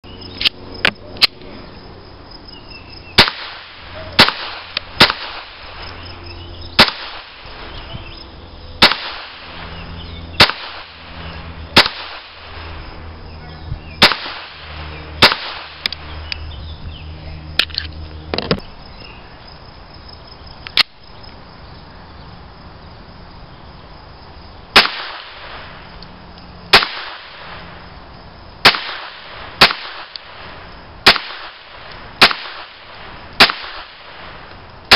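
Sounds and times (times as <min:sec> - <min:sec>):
steady low hum: 0:00.0 - 0:34.9
pistol shots: 0:03.2 - 0:05.8, 0:06.8 - 0:07.7, 0:08.8 - 0:09.8, 0:10.4 - 0:11.1, 0:11.8 - 0:12.6, 0:14.0 - 0:16.0, 0:24.8 - 0:25.6, 0:26.7 - 0:27.6, 0:28.6 - 0:30.4, 0:31.0 - 0:34.3.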